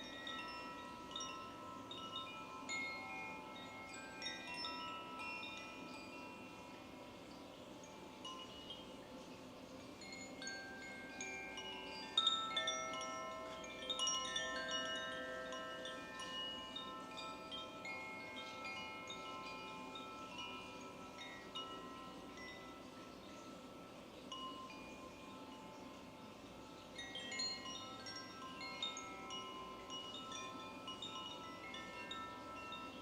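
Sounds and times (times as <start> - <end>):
chimes ringing: 0.0 - 33.0.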